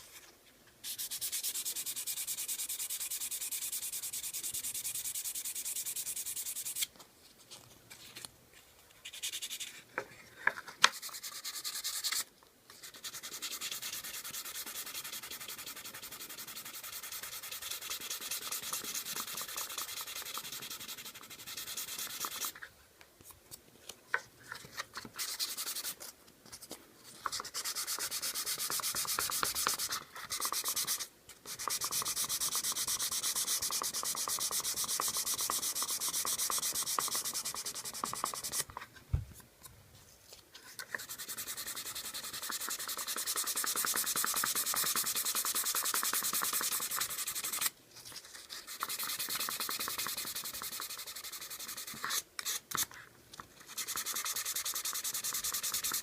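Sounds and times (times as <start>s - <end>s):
sandpaper rubbing wood: 0.9s - 6.9s, 10.9s - 22.5s, 27.4s - 38.7s, 41.0s - 47.7s, 48.6s - 52.6s, 53.7s - 56.0s.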